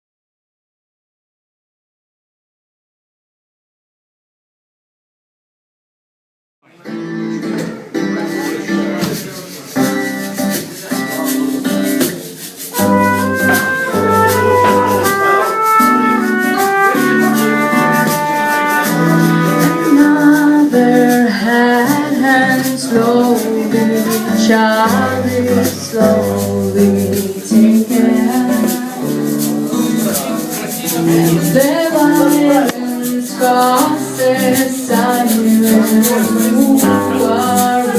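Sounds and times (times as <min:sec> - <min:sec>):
strummed guitar chords: 0:06.8 - 0:12.1, 0:12.7 - 0:37.9
shaker rhythm: 0:08.2 - 0:37.9
bass guitar: 0:12.8 - 0:20.9, 0:21.9 - 0:32.7.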